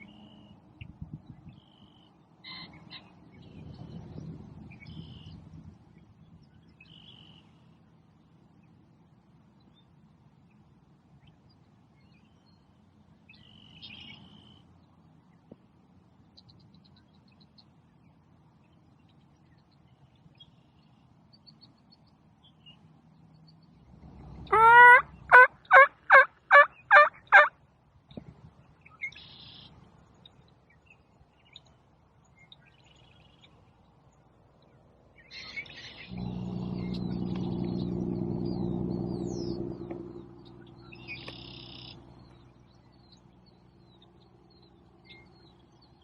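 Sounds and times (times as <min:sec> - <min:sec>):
steady low hum: 0:00.0 - 0:25.7, 0:33.2 - 0:46.0
songbird chirps: 0:00.0 - 0:46.0
wild turkey gobbling: 0:24.5 - 0:27.5.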